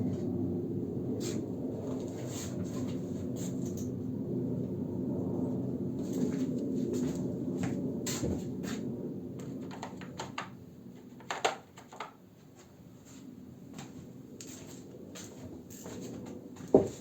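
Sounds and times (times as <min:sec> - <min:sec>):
low hum: 0:00.0 - 0:08.0.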